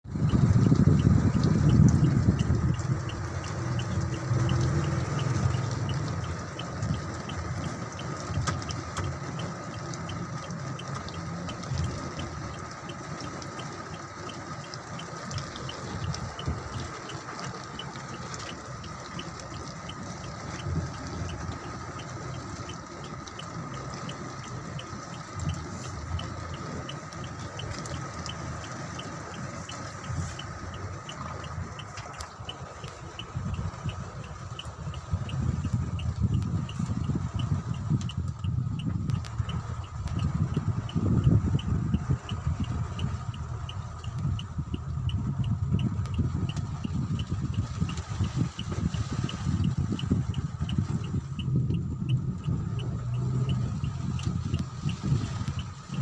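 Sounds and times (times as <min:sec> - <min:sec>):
rain falling: 0:00.0 - 0:56.0
water running and splashing: 0:00.1 - 0:38.4
fast even ticking: 0:00.1 - 0:56.0.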